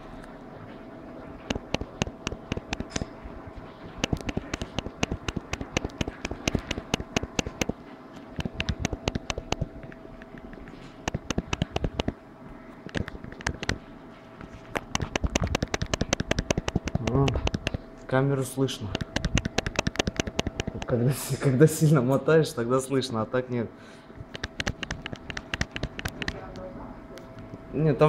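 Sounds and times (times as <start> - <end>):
phone camera module ticking: 1.5 - 3.1, 4.0 - 7.8, 8.4 - 12.2, 12.9 - 13.8, 14.8 - 17.8, 18.9 - 20.9, 24.3 - 26.4.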